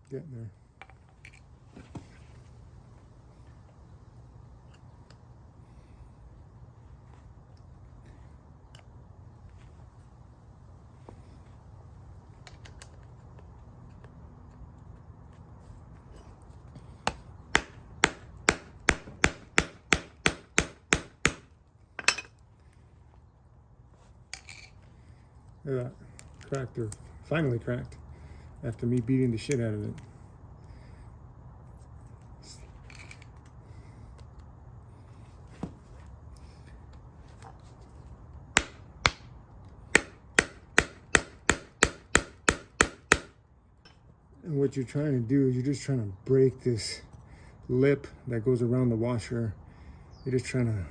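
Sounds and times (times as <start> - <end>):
hammer striking metal: 17.5 - 21.4, 38.6 - 39.3, 39.9 - 43.3.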